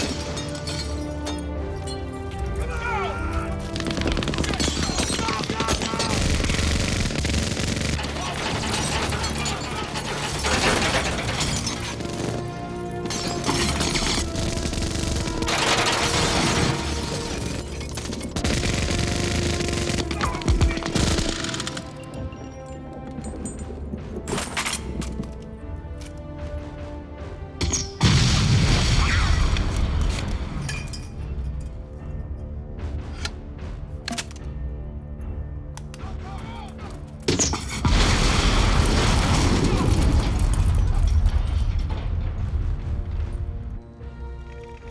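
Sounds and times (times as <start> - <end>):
film score music: 0.0 - 44.9
gunfire bursts: 3.5 - 22.1
booming impacts: 37.8 - 44.0.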